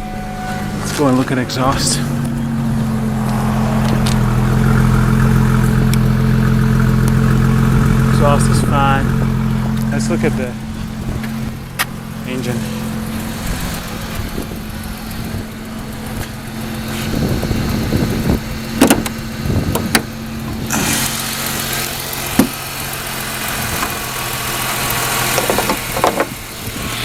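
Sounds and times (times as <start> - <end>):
car engine idling: 0.0 - 27.0
sharp clicks and knocks: 18.8 - 20.6, 21.8 - 22.7, 24.9 - 26.4.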